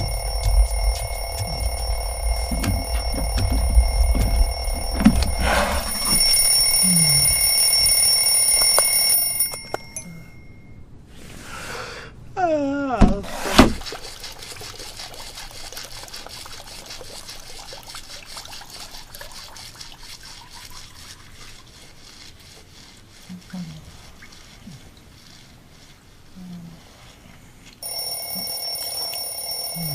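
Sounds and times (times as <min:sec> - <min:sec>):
alarm clock ringing: 0:00.0 - 0:10.8, 0:27.8 - 0:29.9
faint water trickle: 0:13.8 - 0:25.6.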